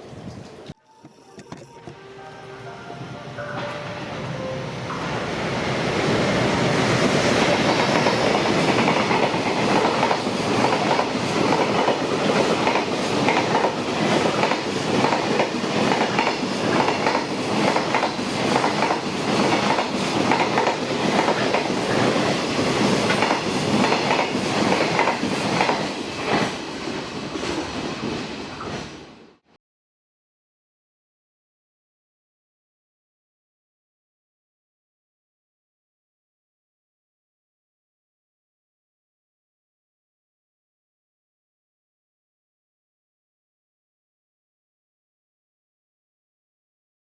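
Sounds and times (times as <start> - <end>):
electric train passing: 0.0 - 29.4.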